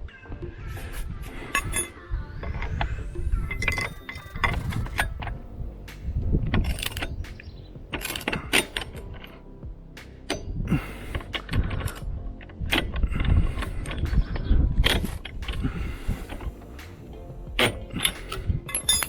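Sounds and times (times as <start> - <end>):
wrench and metal parts clinking: 16.1 - 19.0.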